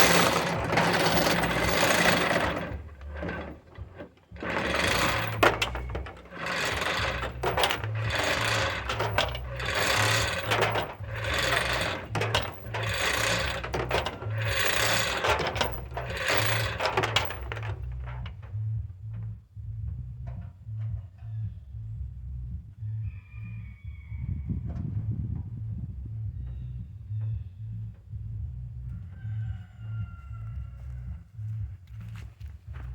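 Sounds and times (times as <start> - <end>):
hoist lifting in bursts: 0.0 - 18.4
low pulsing hum: 0.0 - 29.1, 30.0 - 32.9.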